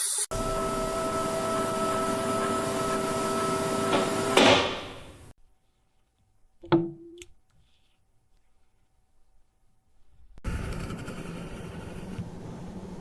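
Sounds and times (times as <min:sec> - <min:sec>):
hum of steady tones: 0:00.3 - 0:04.4.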